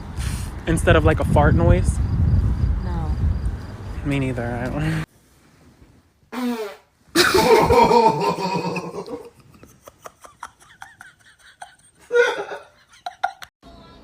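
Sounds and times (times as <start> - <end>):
loud fart: 6.3 - 7.9.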